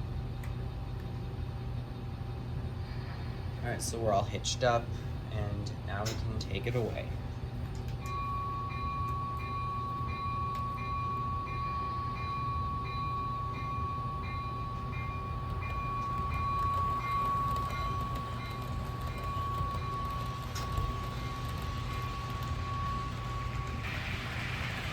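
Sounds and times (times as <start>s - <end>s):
model train whine: 7.2s - 24.9s
light ticking of train: 7.7s - 24.9s.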